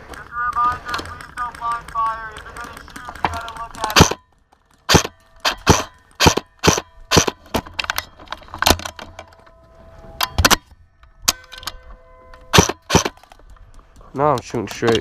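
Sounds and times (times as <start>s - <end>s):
airsoft gun shots: 3.8s - 4.2s, 4.9s - 7.4s, 12.5s - 13.2s.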